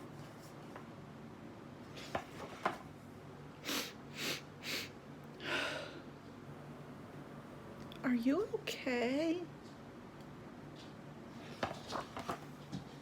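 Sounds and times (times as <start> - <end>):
person breathing quietly: 3.6 - 6.2.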